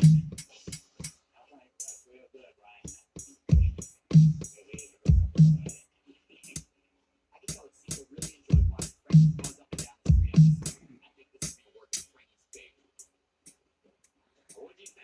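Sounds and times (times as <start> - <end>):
snappy drum hits: 0.0 - 1.1, 2.9 - 5.8, 7.5 - 10.8
closed hi-hat ticks: 0.0 - 1.2, 1.8 - 2.2, 2.8 - 6.7, 7.5 - 10.8, 11.4 - 15.0
deep kick drum hits: 3.5 - 4.4, 5.1 - 5.6, 8.5 - 9.4, 10.1 - 10.6.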